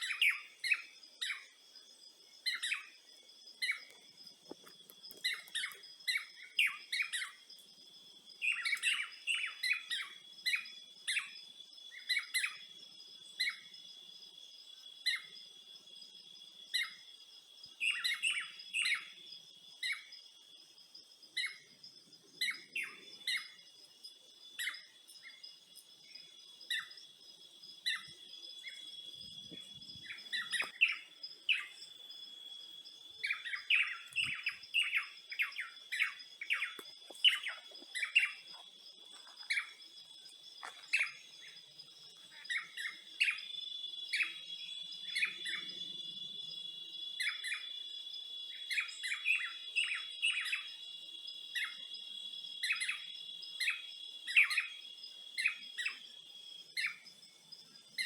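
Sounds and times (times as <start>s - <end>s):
birds chirping: 2.3s - 7.4s, 21.4s - 46.6s.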